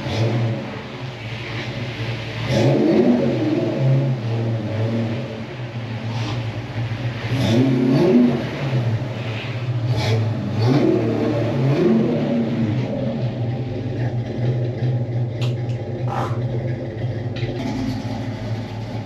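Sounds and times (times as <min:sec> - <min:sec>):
car engine idling and revving: 0:00.0 - 0:19.0.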